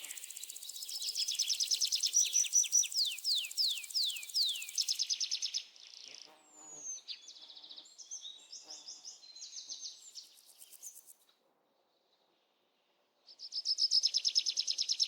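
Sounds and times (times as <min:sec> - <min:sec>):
birds whistling and trilling: 0:00.0 - 0:05.6.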